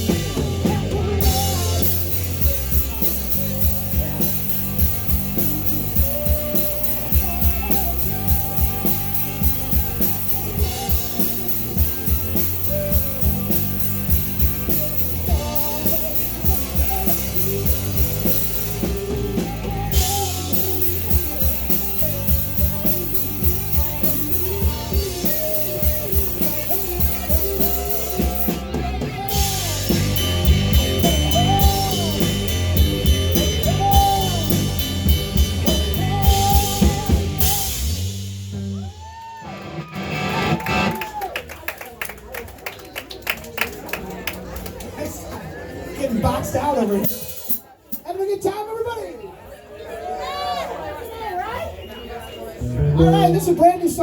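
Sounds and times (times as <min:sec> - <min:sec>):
person singing: 0:00.0 - 0:38.2
electric guitars: 0:00.0 - 0:41.3, 0:52.6 - 0:53.5
drum kit: 0:00.0 - 0:41.4, 0:46.4 - 0:48.1.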